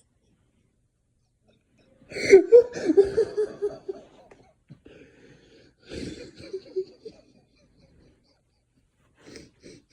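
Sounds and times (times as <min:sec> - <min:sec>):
person laughing hard: 0:02.2 - 0:04.4, 0:05.9 - 0:08.6.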